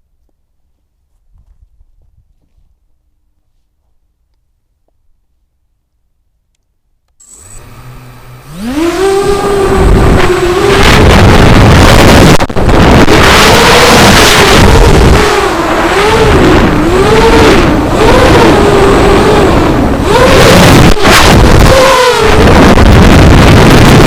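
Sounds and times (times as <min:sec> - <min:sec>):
wind rush on microphone: 0:01.3 - 0:02.8, 0:08.5 - 0:24.0
drone motors whining: 0:07.2 - 0:24.0.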